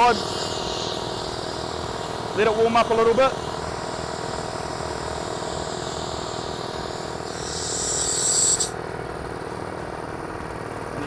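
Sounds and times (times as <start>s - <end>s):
hiss of escaping air: 0.0s - 8.8s
air compressor running: 0.0s - 11.0s.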